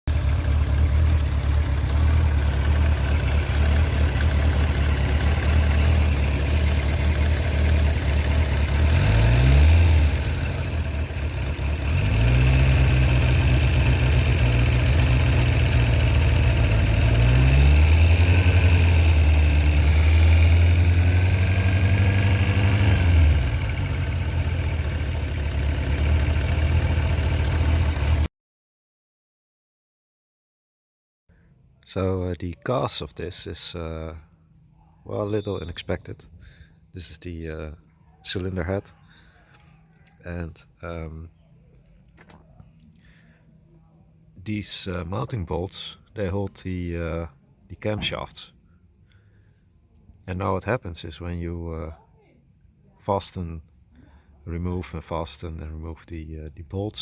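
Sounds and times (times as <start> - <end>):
motorcycle engine idling and revving: 0.0 - 28.3
engine rattle: 0.1 - 28.3.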